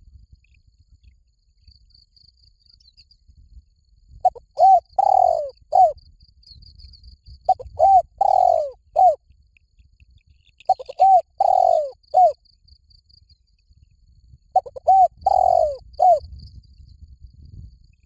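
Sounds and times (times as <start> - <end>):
faint high insect chirping: 0.0 - 18.0
dove cooing: 4.2 - 6.0, 7.5 - 9.2, 10.7 - 12.4, 14.6 - 16.2.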